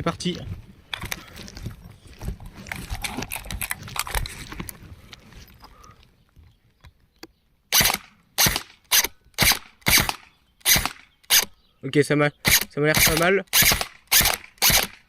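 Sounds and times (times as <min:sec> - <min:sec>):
handling clicks and knocks: 0:02.2 - 0:04.8
airsoft gun shots: 0:07.7 - 0:11.5, 0:12.4 - 0:15.0.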